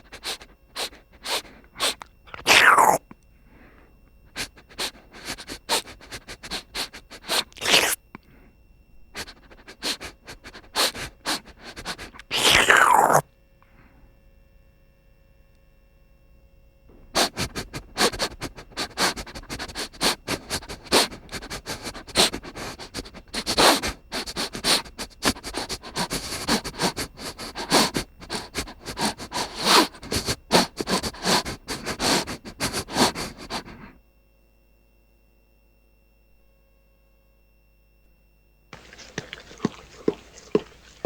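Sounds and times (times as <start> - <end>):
person sniffing and slurping: 0.0 - 3.0, 4.3 - 8.0, 9.2 - 13.2, 17.2 - 33.8, 38.8 - 41.0.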